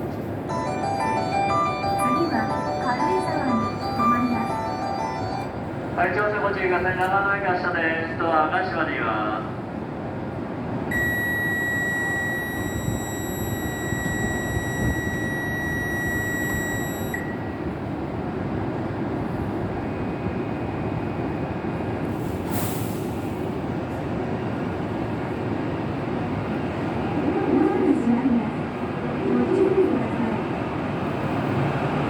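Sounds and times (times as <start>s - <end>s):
train rumbling: 0.0s - 32.0s
high electronic warning tone: 0.5s - 5.6s, 10.9s - 17.6s.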